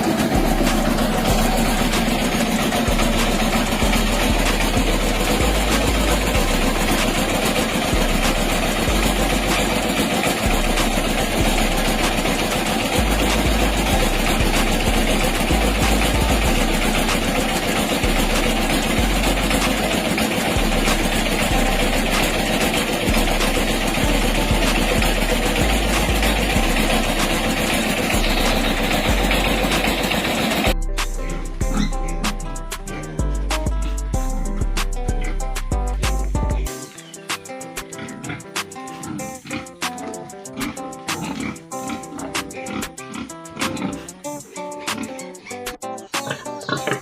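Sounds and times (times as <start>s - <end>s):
loud engine running: 0.0s - 36.8s.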